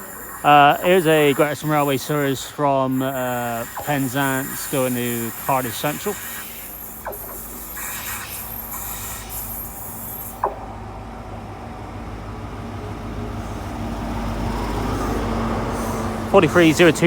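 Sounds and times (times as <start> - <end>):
diesel train engine drone: 0.0 - 17.0.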